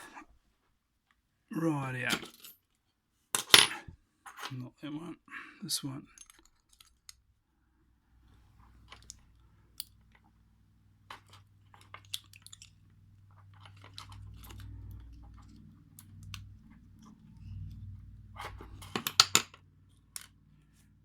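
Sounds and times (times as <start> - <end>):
low steady hum: 8.0 - 21.0
small metallic clicks and taps: 8.8 - 10.3.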